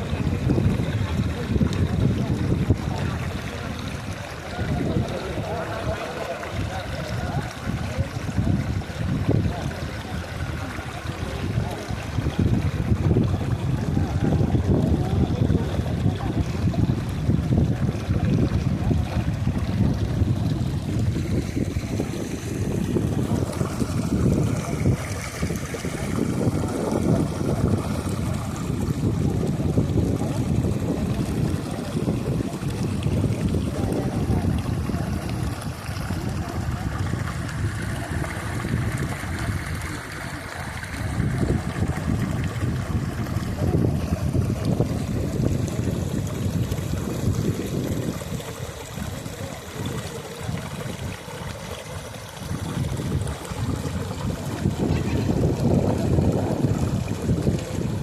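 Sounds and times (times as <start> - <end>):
river water flowing: 0.0 - 58.0
wind rumble on microphone: 0.0 - 58.0
river water rushing: 18.9 - 29.4.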